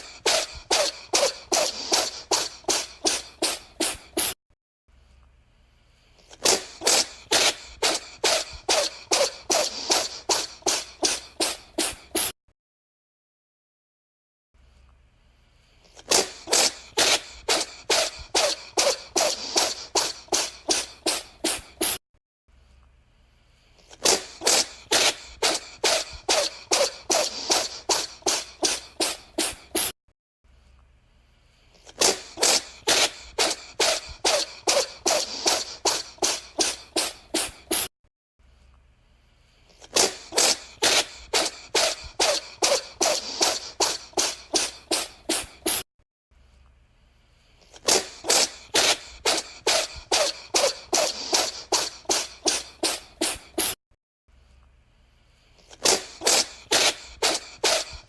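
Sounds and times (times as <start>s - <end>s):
cat sneezing: 0.0s - 4.4s, 6.2s - 12.4s, 15.9s - 22.0s, 23.8s - 30.0s, 31.8s - 37.9s, 39.7s - 45.9s, 47.6s - 53.8s, 55.6s - 58.0s.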